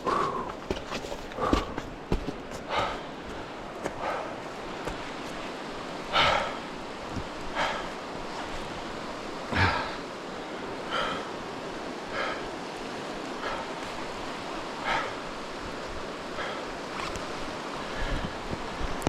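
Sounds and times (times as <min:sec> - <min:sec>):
footsteps on wet ground: 0:00.0 - 0:05.6
water rushing: 0:00.0 - 0:19.0.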